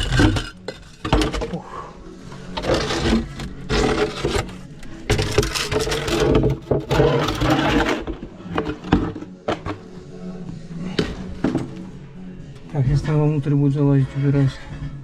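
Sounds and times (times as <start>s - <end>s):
wood scraping against brick: 0.0s - 1.7s, 2.3s - 10.0s.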